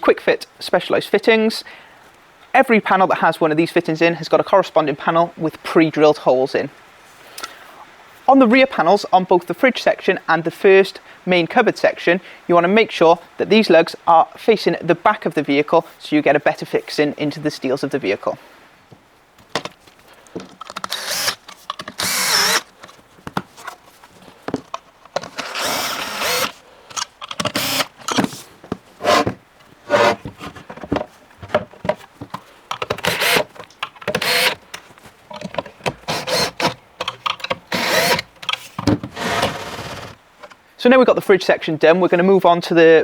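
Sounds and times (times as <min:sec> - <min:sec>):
wooden panels knocking and clattering: 0:19.4 - 0:19.8, 0:27.2 - 0:36.2, 0:38.3 - 0:39.6
cordless drill running in bursts: 0:20.8 - 0:21.4, 0:22.0 - 0:22.7, 0:25.3 - 0:28.0, 0:33.1 - 0:33.5, 0:34.2 - 0:34.6, 0:36.1 - 0:36.8, 0:37.7 - 0:38.2.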